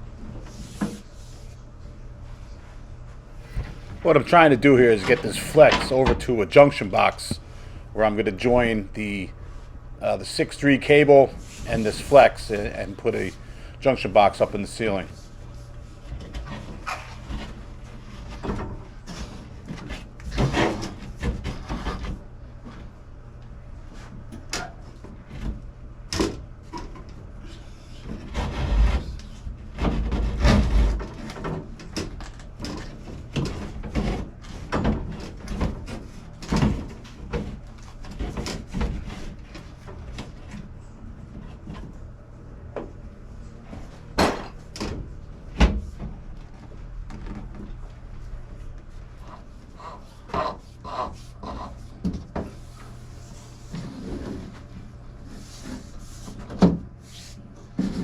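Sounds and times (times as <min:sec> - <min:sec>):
steady low hum: 0:00.0 - 0:58.0
knocks clatters and scrapes: 0:03.4 - 0:07.4, 0:15.8 - 0:22.8, 0:24.0 - 0:42.0, 0:57.6 - 0:58.0.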